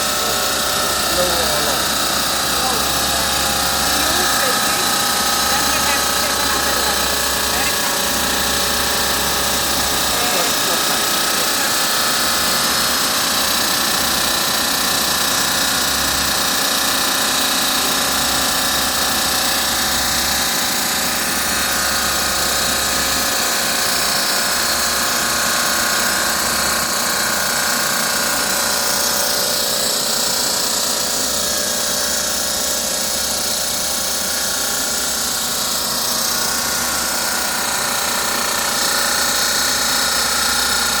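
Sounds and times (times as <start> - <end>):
saw blade cutting stone: 0.0 - 26.2.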